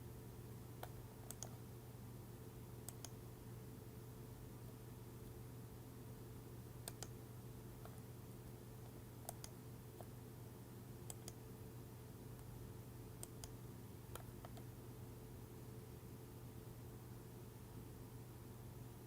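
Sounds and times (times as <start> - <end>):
low electrical hum: 0.0 - 19.0
computer mouse clicks: 0.8 - 1.6, 2.9 - 3.2, 6.8 - 7.2, 8.8 - 10.1, 11.1 - 11.4, 13.2 - 14.7.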